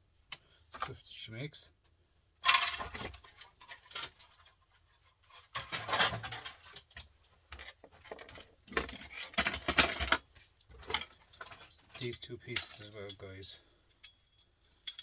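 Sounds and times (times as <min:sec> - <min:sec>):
printer parts rattling: 0:07.6 - 0:13.1.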